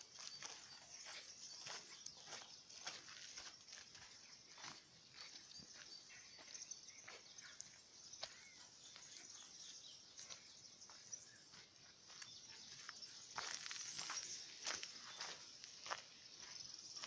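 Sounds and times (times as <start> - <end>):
faint bird chirps: 0.0 - 17.0.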